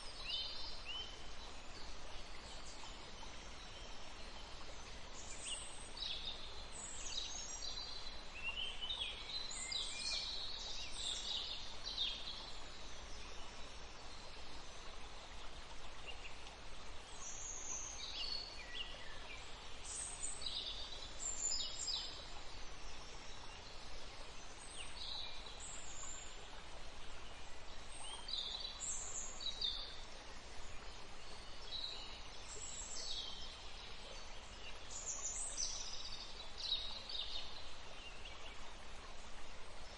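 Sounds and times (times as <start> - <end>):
steady background hiss: 0.0 - 39.9.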